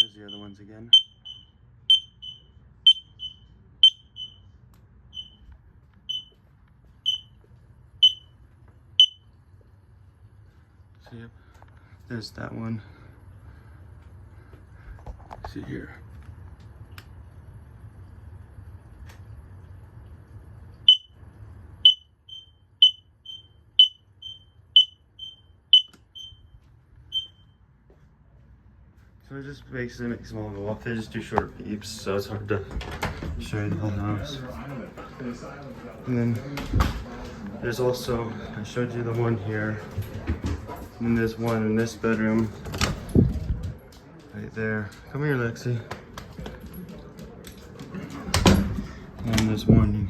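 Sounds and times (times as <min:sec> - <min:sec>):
fainter beep from second alarm: 0:00.0 - 0:04.5, 0:05.1 - 0:05.5, 0:06.1 - 0:06.4, 0:07.0 - 0:07.4, 0:08.0 - 0:08.4, 0:09.0 - 0:09.3, 0:20.9 - 0:21.2, 0:21.8 - 0:27.6
smoke alarm beeps: 0:00.0 - 0:04.5, 0:05.1 - 0:06.4, 0:07.0 - 0:07.4, 0:08.0 - 0:08.4, 0:09.0 - 0:09.3, 0:20.9 - 0:21.2, 0:21.8 - 0:27.6.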